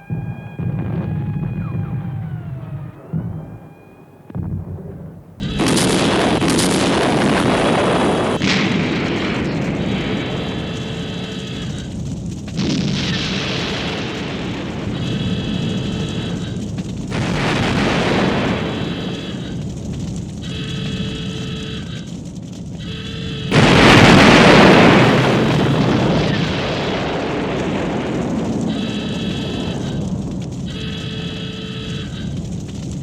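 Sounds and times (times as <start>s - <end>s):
short alarm-like tone: 0.0s - 4.3s
heavy explosions: 0.0s - 33.0s.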